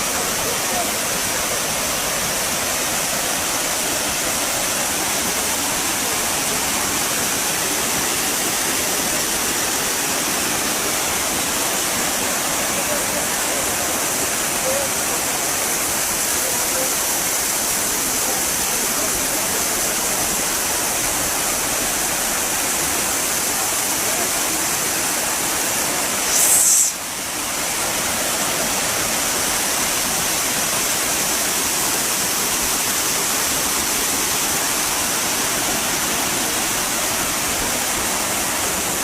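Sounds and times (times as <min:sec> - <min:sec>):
water gushing: 0:00.0 - 0:39.0.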